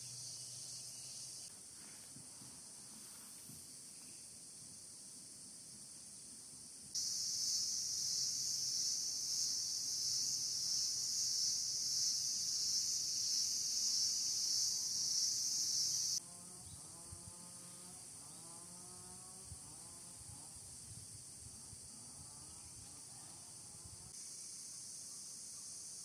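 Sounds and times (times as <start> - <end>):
faint high insect hiss: 0.0 - 26.0
insects shrilling: 7.0 - 16.2.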